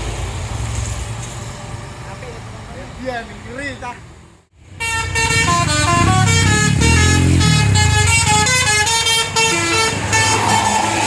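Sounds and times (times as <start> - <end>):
bus engine running: 0.0 - 11.0
bus horn playing melody: 4.7 - 10.6.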